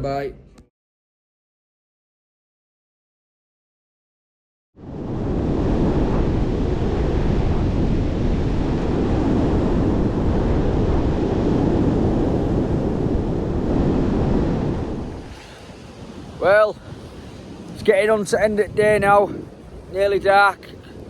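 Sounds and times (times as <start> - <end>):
wind buffeting microphone: 4.8 - 21.0.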